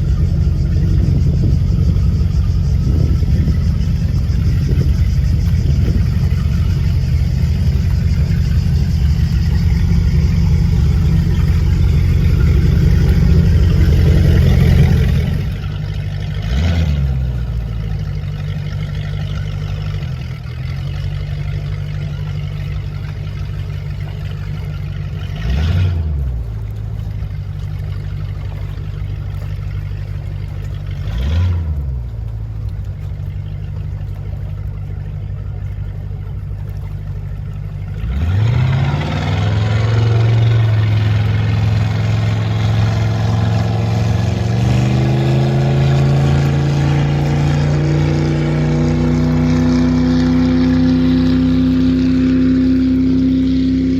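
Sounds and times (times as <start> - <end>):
engine throttle blips: 0.0 - 53.9
speedboat engine running: 0.0 - 53.9.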